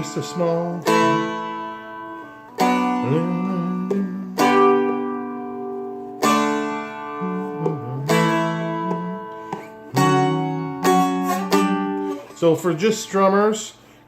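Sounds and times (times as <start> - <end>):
fretted string instrument strummed: 0.0 - 13.3.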